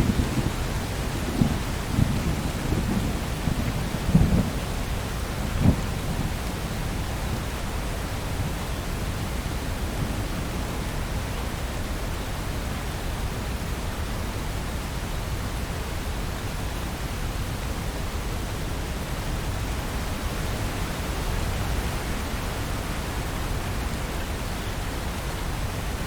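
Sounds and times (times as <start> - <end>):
thunder claps: 0.0 - 7.0
thunder rumbling: 0.0 - 7.6
steady rain: 0.0 - 26.0.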